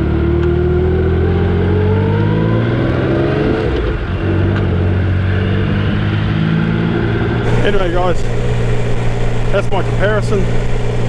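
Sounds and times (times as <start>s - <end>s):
motorcycle engine running: 3.7s - 11.0s.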